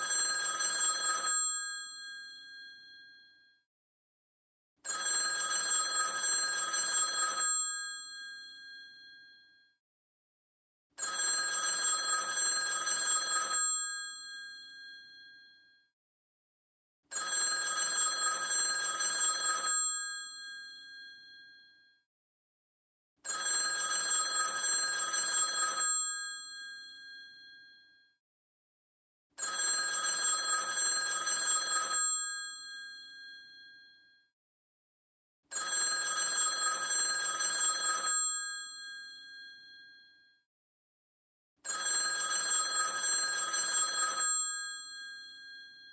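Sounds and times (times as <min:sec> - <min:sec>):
telephone bell ringing: 0:00.0 - 0:03.4, 0:04.8 - 0:09.6, 0:11.0 - 0:15.8, 0:17.1 - 0:21.8, 0:23.2 - 0:27.9, 0:29.4 - 0:34.1, 0:35.5 - 0:40.2, 0:41.6 - 0:45.9.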